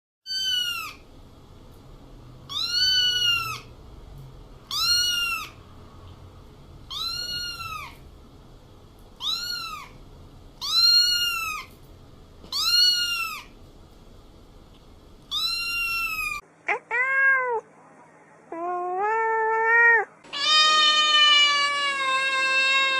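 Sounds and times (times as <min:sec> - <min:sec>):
cat meowing: 0:00.3 - 0:01.0, 0:02.5 - 0:03.7, 0:04.7 - 0:05.6, 0:06.9 - 0:08.0, 0:09.2 - 0:10.0, 0:10.6 - 0:11.7, 0:12.5 - 0:13.5, 0:15.3 - 0:17.7, 0:18.5 - 0:22.9.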